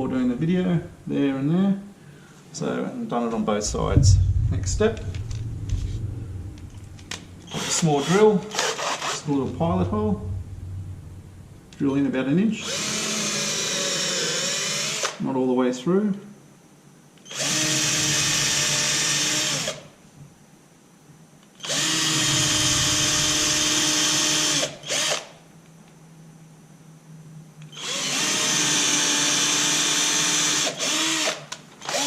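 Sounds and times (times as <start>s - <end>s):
power drill whining: 12.6s - 15.2s, 21.6s - 25.3s, 27.7s - 32.0s.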